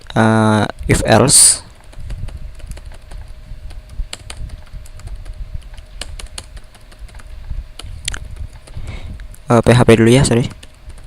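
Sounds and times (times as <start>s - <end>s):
typing on a keyboard: 1.7s - 8.8s, 10.5s - 11.0s.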